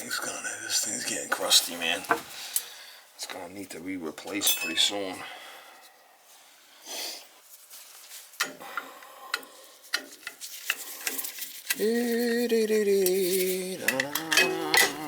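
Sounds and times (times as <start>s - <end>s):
man humming: 0.0s - 2.2s, 11.8s - 15.0s
metal tools clinking and scraping: 4.2s - 5.9s, 9.9s - 11.8s, 13.4s - 15.0s.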